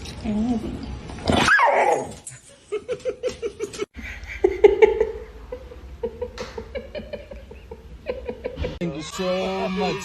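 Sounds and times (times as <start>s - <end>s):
dog yelping: 1.3s - 2.2s.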